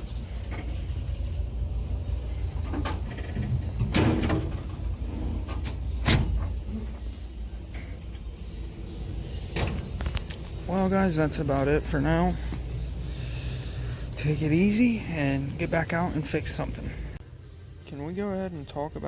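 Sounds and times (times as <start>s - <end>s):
steady low rumble: 0.0s - 19.0s
steel drawers sliding and knocking shut: 2.4s - 7.0s, 9.5s - 10.0s
drawer scrape: 2.6s - 7.0s.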